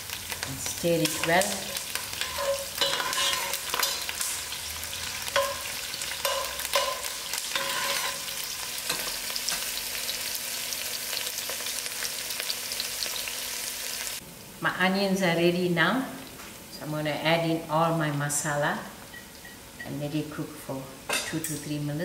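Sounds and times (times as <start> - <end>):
food sizzling in hot oil: 0.0 - 14.2
spoon scraping a pot: 1.0 - 4.3, 5.3 - 8.3.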